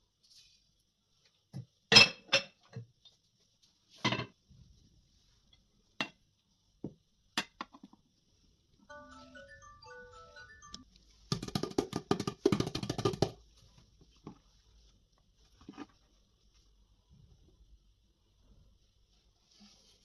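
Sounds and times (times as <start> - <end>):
soft plucked instrumental music: 8.9 - 10.8.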